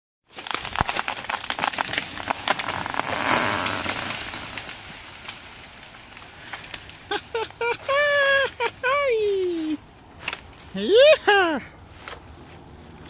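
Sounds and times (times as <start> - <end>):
wood cracking and snapping: 0.3 - 8.2, 10.2 - 10.7
tree crashing down: 0.3 - 8.8.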